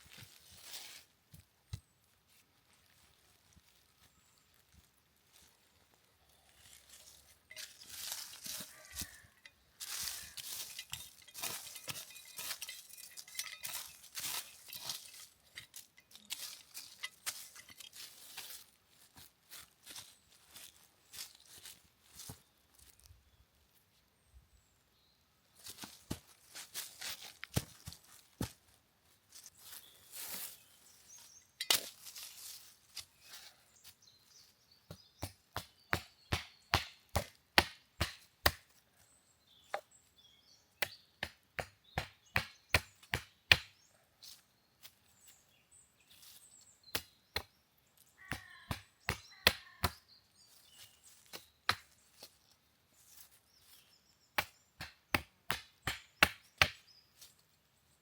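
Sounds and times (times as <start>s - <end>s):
wood being chopped: 34.9s - 38.7s, 40.8s - 43.8s, 48.3s - 50.0s, 54.4s - 56.8s.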